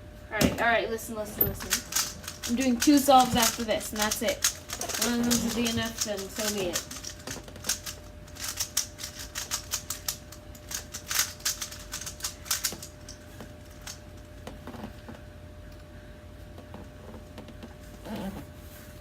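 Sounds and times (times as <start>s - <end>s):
puzzle cube clicking turns: 1.6s - 13.2s.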